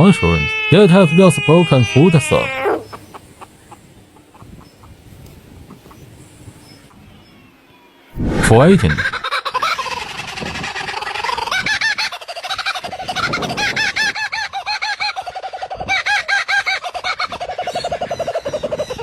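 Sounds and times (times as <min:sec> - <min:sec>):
rapid repeated animal call: 0:00.0 - 0:05.0.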